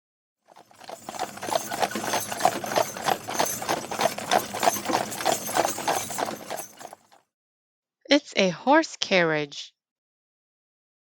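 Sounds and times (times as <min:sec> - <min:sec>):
carriage wheels rolling: 0:00.5 - 0:07.2
horse hooves clip-clopping: 0:00.5 - 0:07.2.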